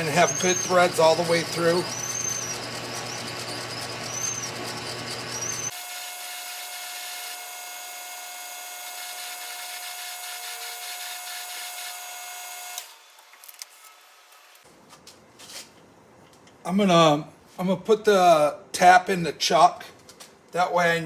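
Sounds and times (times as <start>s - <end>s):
drill bit rasping into metal: 0.0s - 12.0s
lathe whining: 0.0s - 13.0s.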